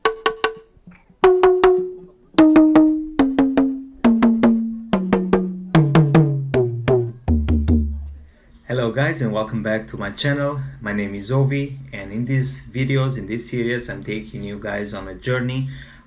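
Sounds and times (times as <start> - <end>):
struck pitched notes descending: 0.0 - 8.3.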